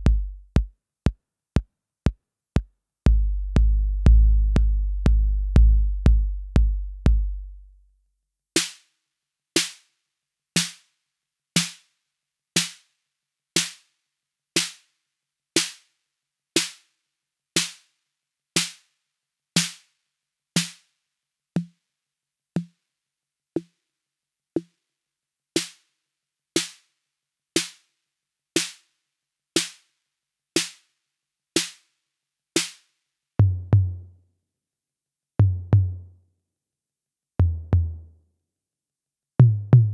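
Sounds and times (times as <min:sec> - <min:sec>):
deep bass drum booming: 0:00.0 - 0:00.7, 0:03.1 - 0:07.5, 0:37.4 - 0:38.0, 0:39.4 - 0:39.9.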